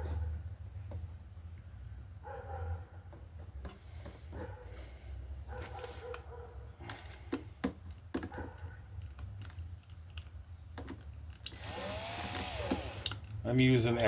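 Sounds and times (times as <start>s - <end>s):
wooden pieces clicking and knocking: 7.3s - 11.6s.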